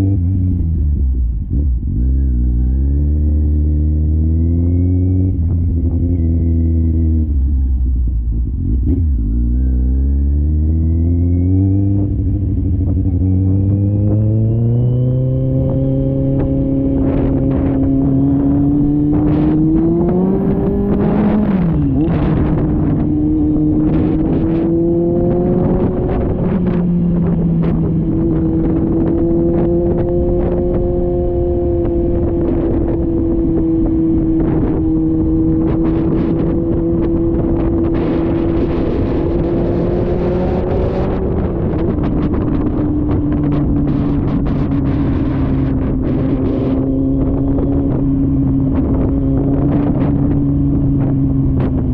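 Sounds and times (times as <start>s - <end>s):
motorcycle engine running: 4.9s - 51.9s
wind buffeting microphone: 10.8s - 51.9s.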